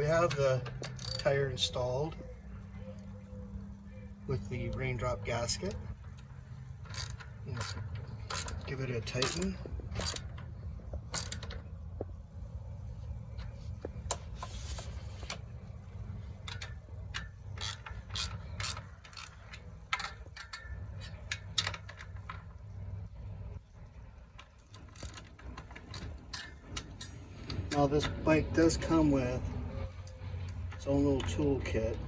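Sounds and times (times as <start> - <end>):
ratcheting socket wrench clicking: 0.3 - 1.3, 6.1 - 11.7, 16.4 - 22.5, 24.4 - 27.2.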